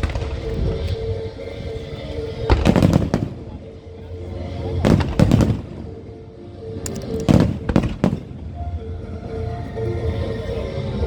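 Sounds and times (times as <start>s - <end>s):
music playing: 0.0s - 11.0s
fireworks bangs: 2.5s - 3.6s, 4.8s - 6.0s, 7.3s - 8.5s.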